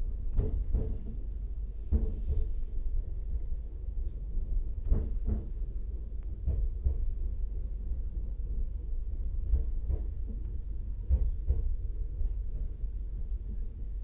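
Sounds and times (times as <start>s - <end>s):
train rumbling on rails: 0.0s - 14.0s.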